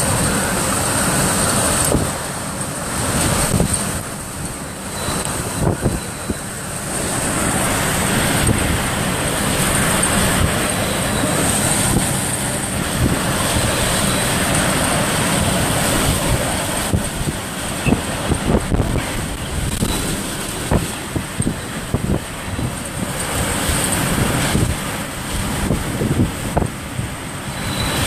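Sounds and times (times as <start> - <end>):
strong wind rushing: 0.0 - 28.0
gusts thumping against car: 15.3 - 27.2.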